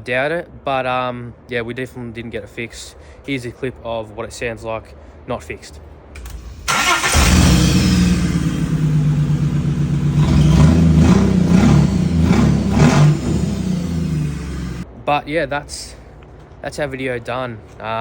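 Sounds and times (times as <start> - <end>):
misfiring car engine revving: 6.2 - 14.8.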